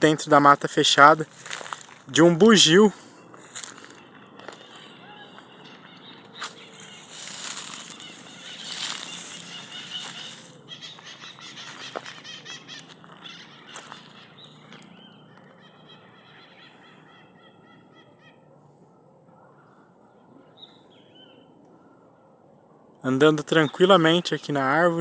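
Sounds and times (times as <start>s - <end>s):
rustling in foliage: 0.3s - 14.9s
nasal honking animal calls: 0.3s - 18.6s.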